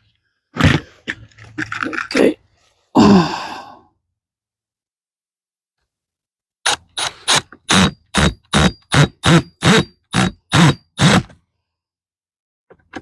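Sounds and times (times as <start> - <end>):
screw grinding into wood: 6.7 - 11.4.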